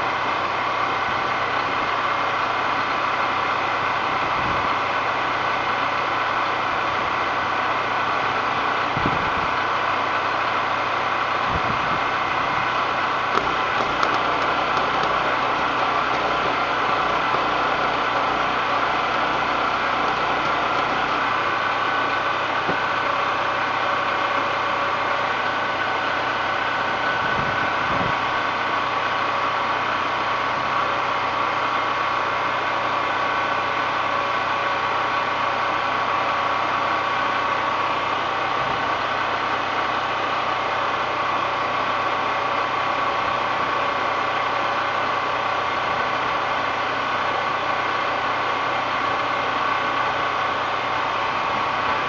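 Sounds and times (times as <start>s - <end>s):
small engine running: 12.5s - 26.0s.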